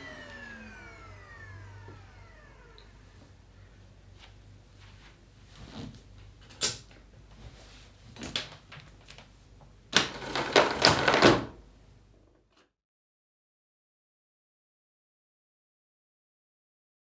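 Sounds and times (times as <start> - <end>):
plastic clattering: 10.0 - 11.6.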